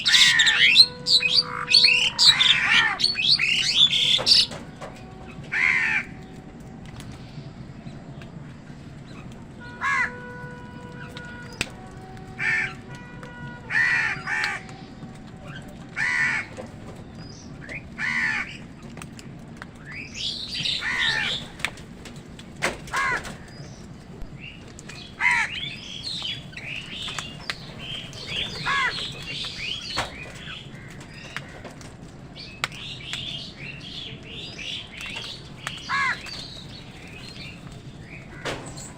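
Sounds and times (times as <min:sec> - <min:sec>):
crows cawing: 0:00.0 - 0:06.3, 0:09.6 - 0:16.7, 0:17.7 - 0:18.7, 0:20.5 - 0:21.7, 0:22.8 - 0:23.6, 0:25.0 - 0:31.8, 0:35.2 - 0:38.9
small birds chirping: 0:00.0 - 0:13.4, 0:19.8 - 0:21.8, 0:23.0 - 0:38.9.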